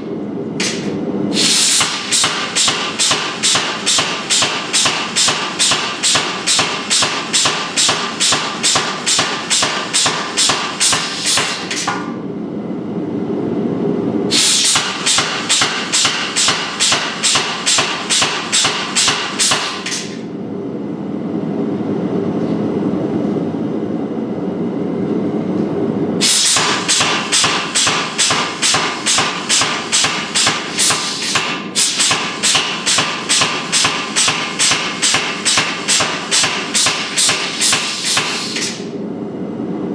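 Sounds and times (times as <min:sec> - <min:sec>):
hammer striking metal on anvil: 0:00.6 - 0:01.0, 0:01.7 - 0:12.1, 0:14.3 - 0:20.2, 0:26.2 - 0:38.9.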